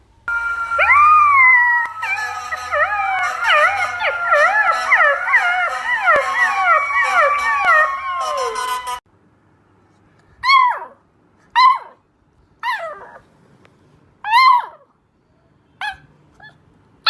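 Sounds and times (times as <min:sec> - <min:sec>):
puppies howling and whining: 0:00.4 - 0:09.0.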